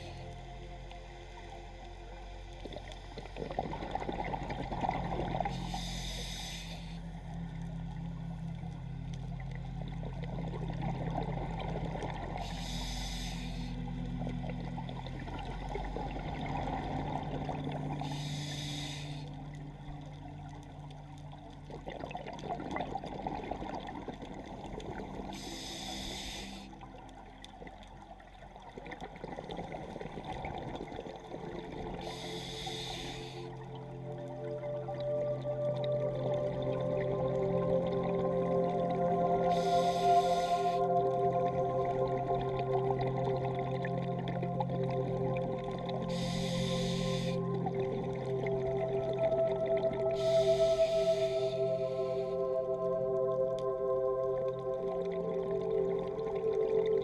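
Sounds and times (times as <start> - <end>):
exhaled air bubbles rumbling: 0.0 - 26.1, 26.7 - 57.0
diver breathing through regulator: 5.4 - 7.2, 12.4 - 14.0, 17.9 - 19.4, 25.4 - 26.8, 32.0 - 33.6, 39.4 - 41.0, 46.1 - 47.6, 50.2 - 52.4.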